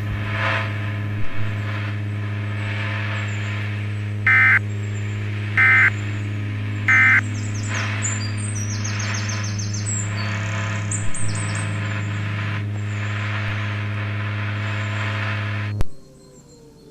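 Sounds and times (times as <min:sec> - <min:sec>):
low buzzing hum with hiss: 0:00.0 - 0:16.9
high falling chirps: 0:06.9 - 0:11.8.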